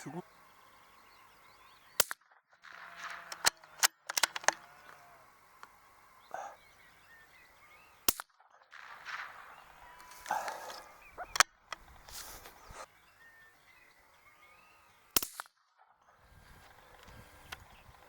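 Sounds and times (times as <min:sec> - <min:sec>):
faint birdsong: 0:00.0 - 0:15.2, 0:16.0 - 0:18.0
sharp cracks and clicks: 0:02.0 - 0:05.0, 0:08.0 - 0:11.9, 0:15.2 - 0:15.6.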